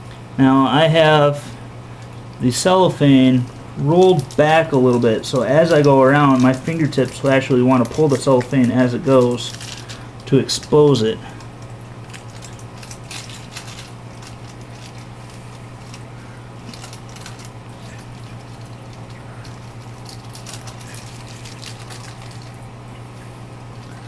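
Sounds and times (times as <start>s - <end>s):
steady low hum: 0.0s - 24.0s
small irregular crackles: 1.4s - 24.0s.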